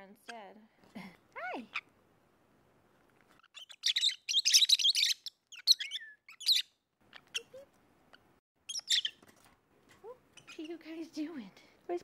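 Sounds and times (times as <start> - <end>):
lovebirds chirping: 3.2 - 9.4, 10.0 - 11.5.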